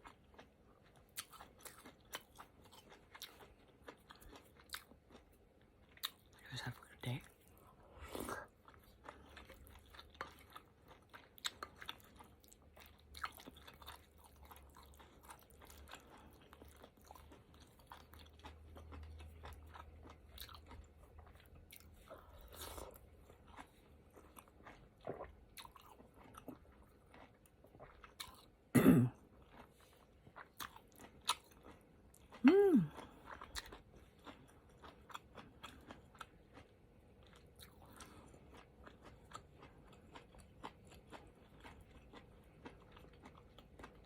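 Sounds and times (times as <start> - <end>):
person chewing food: 0.0 - 44.0
wet mouth sounds: 32.3 - 33.7.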